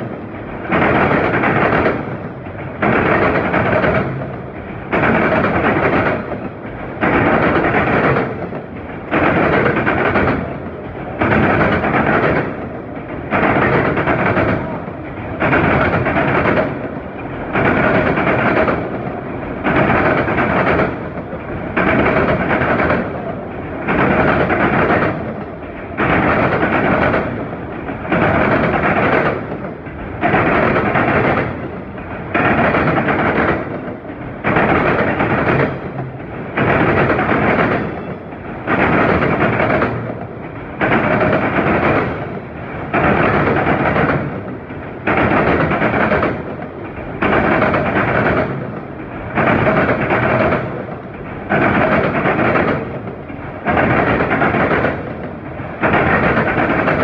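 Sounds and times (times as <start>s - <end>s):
freight train rolling past: 0.0s - 57.0s.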